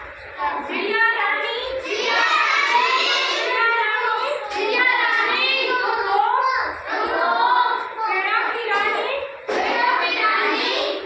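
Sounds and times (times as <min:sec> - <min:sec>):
young children singing: 0:01.6 - 0:08.2, 0:09.5 - 0:11.0.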